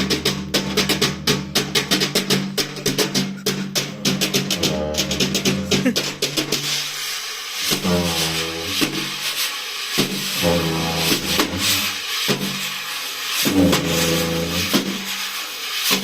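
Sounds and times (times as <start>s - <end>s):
low droning tone: 3.8s - 6.2s.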